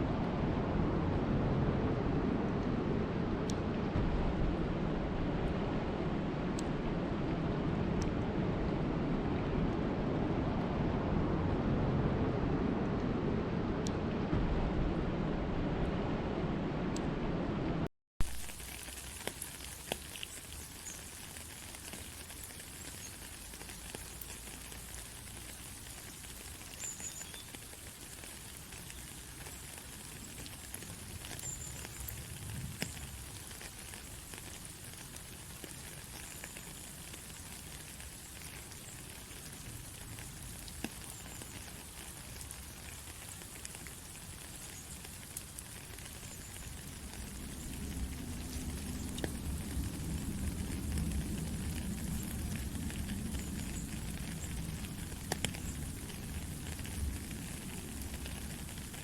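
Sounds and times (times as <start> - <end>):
rain pattering on a surface: 18.2 - 59.0.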